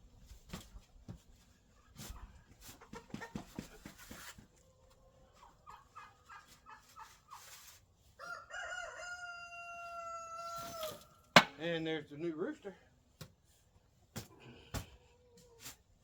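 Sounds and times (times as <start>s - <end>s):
rooster crowing: 8.2s - 11.0s.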